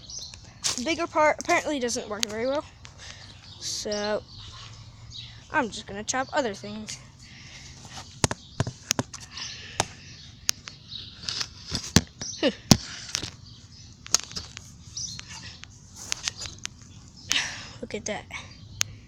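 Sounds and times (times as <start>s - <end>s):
gritty scraping: 0.0s - 10.0s, 10.7s - 17.2s
pickaxe striking packed dirt: 11.3s - 13.4s.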